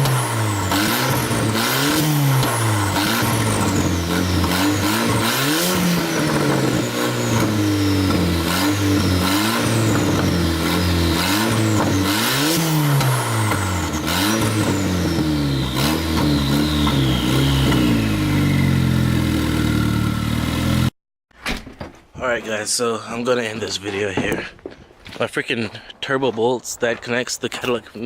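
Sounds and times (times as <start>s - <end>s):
car engine revving: 0.0s - 20.9s.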